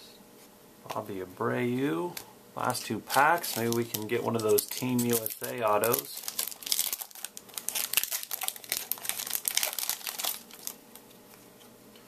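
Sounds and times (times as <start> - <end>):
foil wrapper crinkling and tearing: 3.0 - 11.0.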